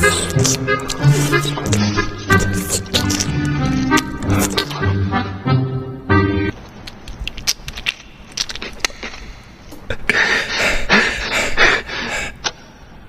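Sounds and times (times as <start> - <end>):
person breathing heavily: 0.0 - 3.3, 8.8 - 12.9.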